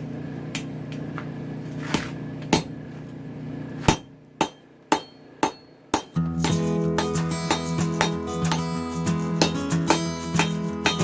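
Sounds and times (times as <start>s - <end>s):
steady hum: 0.0s - 6.1s
hammer striking steel on anvil: 3.9s - 8.7s, 9.4s - 11.0s
guitar music: 6.2s - 11.0s.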